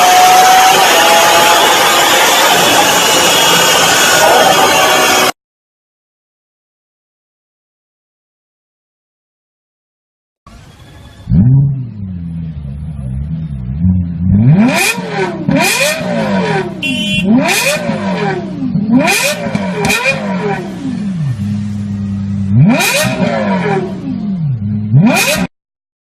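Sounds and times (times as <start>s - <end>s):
engine revving: 0.0s - 5.4s, 10.5s - 25.5s.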